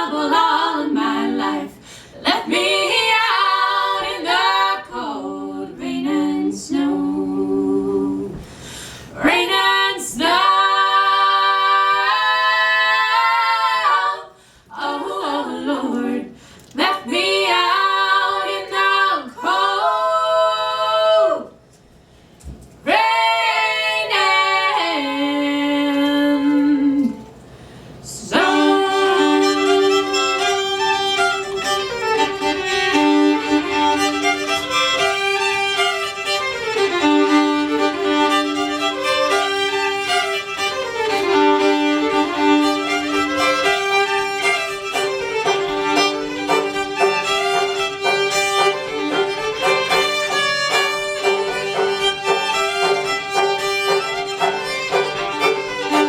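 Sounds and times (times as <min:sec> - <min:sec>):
fiddle tune with drone: 0:28.4 - 0:56.0.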